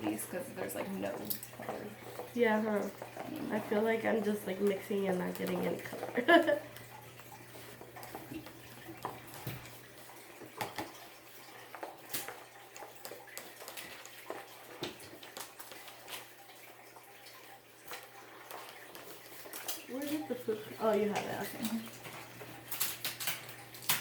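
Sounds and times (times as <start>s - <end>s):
spoons scraping bowls: 0.0s - 9.9s
spoons stirring thick mix: 0.0s - 22.6s.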